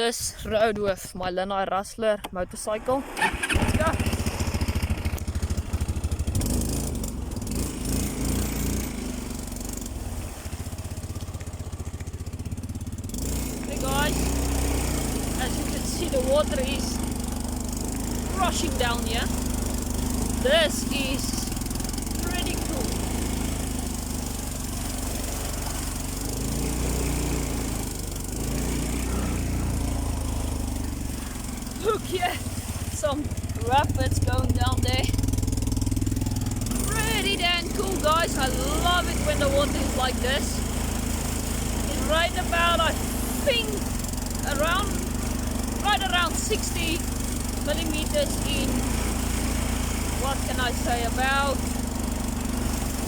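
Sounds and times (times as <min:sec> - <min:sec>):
motorcycle engine running: 0:02.5 - 0:53.0
rushing floodwater: 0:03.1 - 0:53.0.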